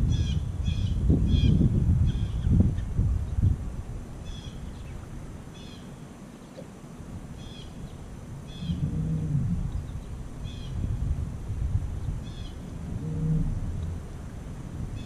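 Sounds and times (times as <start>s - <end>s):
low hum: 0.0s - 15.0s
wind on microphone: 0.0s - 15.0s
bird calling: 4.2s - 10.9s, 12.0s - 13.9s.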